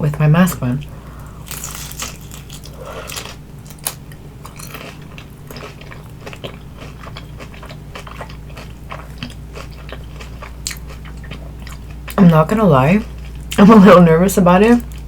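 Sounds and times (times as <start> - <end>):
low steady hum: 0.0 - 15.0
chewing crispy food crunches: 1.3 - 12.2.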